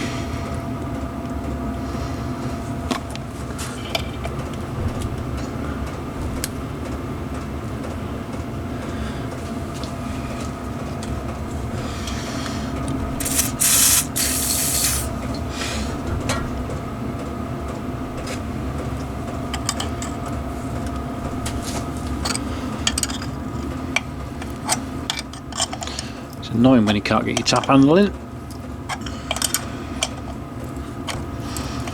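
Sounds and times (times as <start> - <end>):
milling machine motor hum: 12.7 - 15.6
loud hiss: 13.2 - 15.2.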